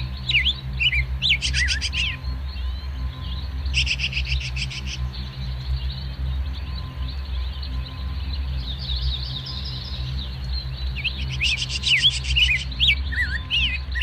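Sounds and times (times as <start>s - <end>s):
birds chirping and twittering: 0.0s - 14.0s
steady low rumble: 0.0s - 14.0s.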